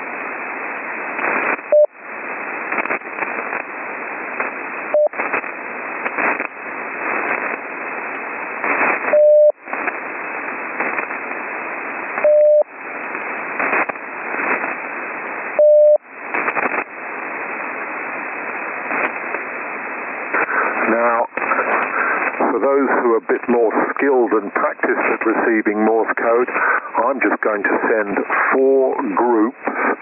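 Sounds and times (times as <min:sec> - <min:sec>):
radio receiver hiss: 0:00.0 - 0:30.0
static crackles: 0:00.0 - 0:30.0
morse code beeps: 0:09.1 - 0:09.5, 0:12.2 - 0:12.6, 0:15.6 - 0:16.0.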